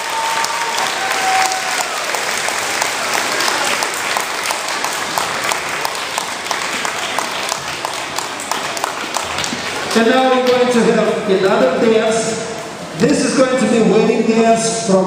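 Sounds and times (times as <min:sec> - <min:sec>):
audience applauding: 0:00.0 - 0:11.2.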